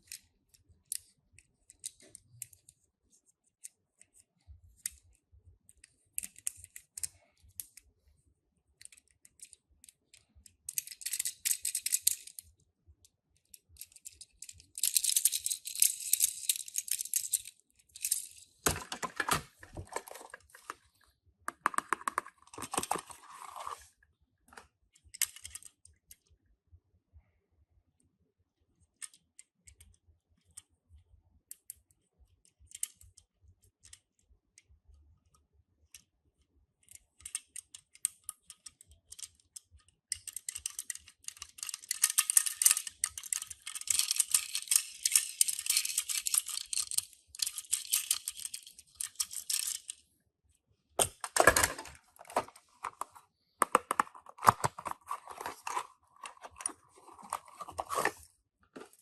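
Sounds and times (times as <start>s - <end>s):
packaging crinkling and rustling: 18.7s - 20.8s, 21.8s - 23.9s, 51.2s - 59.0s
small clicks and clinks: 36.8s - 50.1s, 51.0s - 59.0s.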